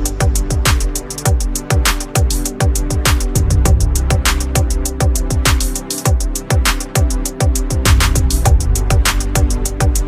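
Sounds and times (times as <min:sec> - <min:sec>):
drum and bass electronic music: 0:00.0 - 0:10.0
deep kick drums: 0:02.6 - 0:06.3, 0:07.4 - 0:10.0.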